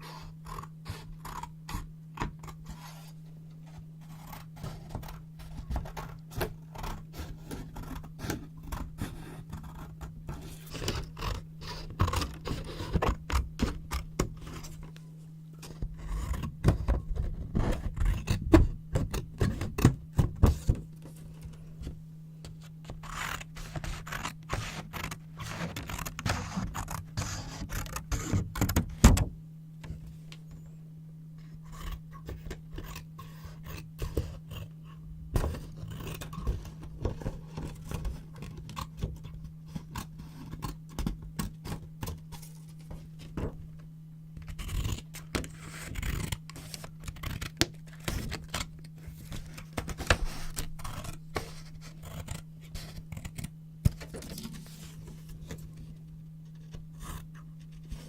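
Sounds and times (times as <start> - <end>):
steady low hum: 0.0 - 58.0
paper rustling and scraping: 22.5 - 28.8, 44.4 - 58.0
scissors snipping paper: 44.5 - 48.6.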